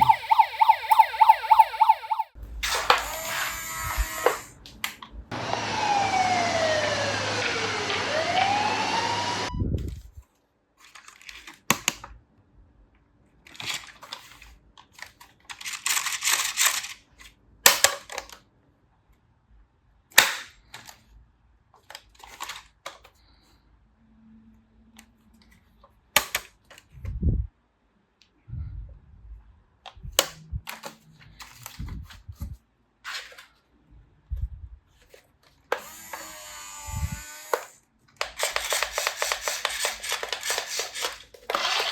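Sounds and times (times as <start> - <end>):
police siren wailing: 0.0 - 2.4, 5.5 - 9.5
plastic toy vehicles clattering: 10.8 - 12.0, 13.4 - 18.4, 21.8 - 23.2, 38.2 - 41.9.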